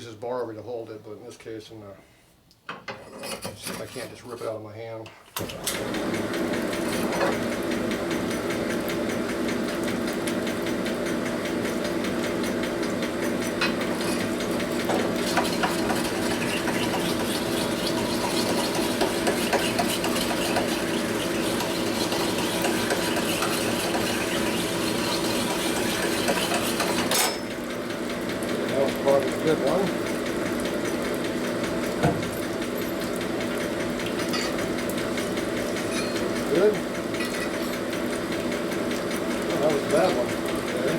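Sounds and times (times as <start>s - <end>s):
stone scraping metal bore: 3.0s - 4.3s, 13.6s - 27.4s, 35.8s - 36.4s
drill spinning stone hone: 13.4s - 27.4s.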